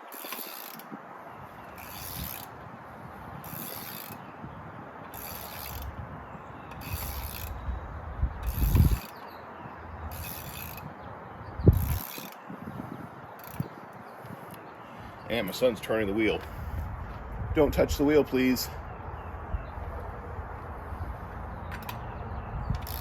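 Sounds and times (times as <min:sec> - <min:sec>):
ratchet wrench clicking: 0:00.0 - 0:00.9, 0:01.8 - 0:02.5, 0:03.4 - 0:04.2, 0:05.1 - 0:05.9, 0:06.7 - 0:07.7, 0:08.4 - 0:09.2, 0:10.1 - 0:10.9, 0:11.7 - 0:12.4, 0:13.4 - 0:13.7, 0:22.7 - 0:23.0.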